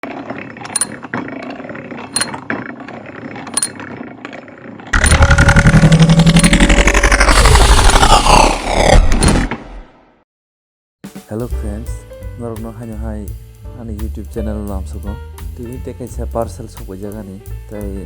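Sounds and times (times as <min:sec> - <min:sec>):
pulsing engine-like rumble: 0:04.9 - 0:08.8.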